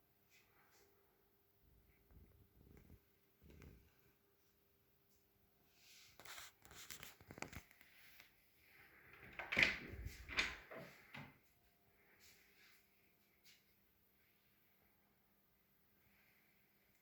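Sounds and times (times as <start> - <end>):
door opening and shutting: 9.1 - 11.4.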